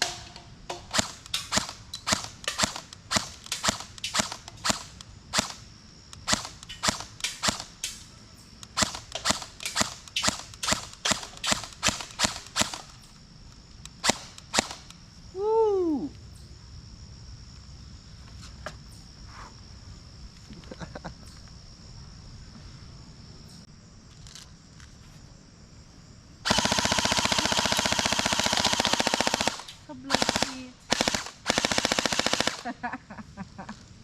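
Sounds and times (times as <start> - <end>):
airsoft rifle firing bursts: 0.8 - 5.6, 6.2 - 7.8, 8.7 - 13.0, 26.5 - 32.7.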